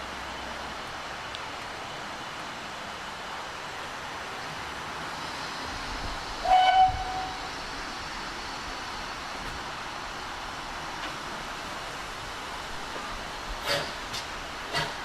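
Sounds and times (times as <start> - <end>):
steady rushing background noise: 0.0 - 15.0
steam locomotive whistle toot: 6.4 - 7.6.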